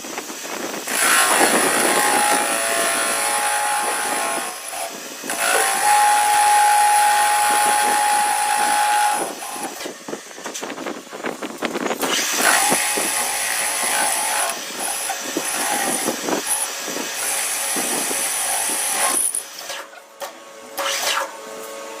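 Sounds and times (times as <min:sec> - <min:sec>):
power tool machining wood: 0:00.0 - 0:10.9, 0:11.7 - 0:20.0.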